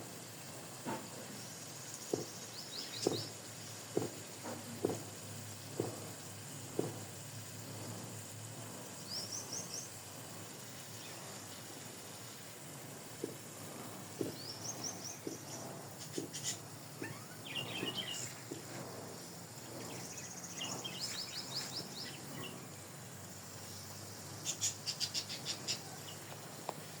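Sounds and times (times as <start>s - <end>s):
bird chirping: 1.9s - 3.4s, 9.0s - 10.0s, 14.2s - 18.5s, 19.7s - 22.6s, 24.1s - 26.3s.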